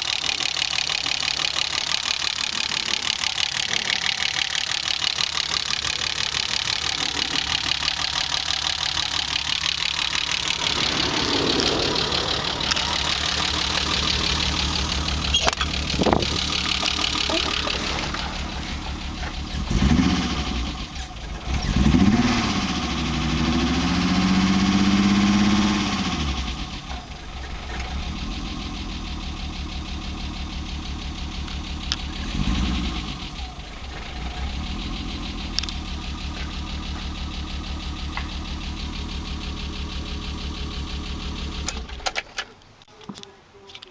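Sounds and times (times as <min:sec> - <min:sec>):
engine revving: 0:00.0 - 0:30.0, 0:32.0 - 0:36.0
car engine idling rough: 0:00.0 - 0:42.1.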